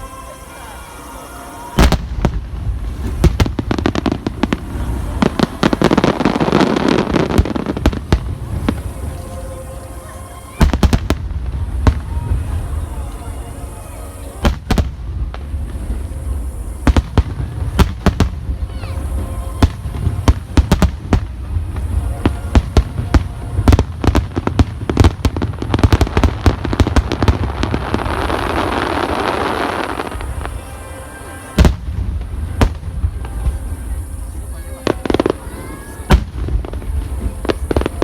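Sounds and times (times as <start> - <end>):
crackling firework stars hiss: 0.0 - 38.0
low rumble: 1.8 - 29.3.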